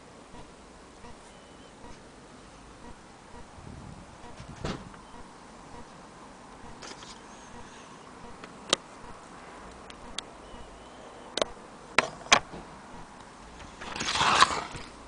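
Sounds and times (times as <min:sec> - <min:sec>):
typewriter carriage scraping rush: 0:13.7 - 0:14.9.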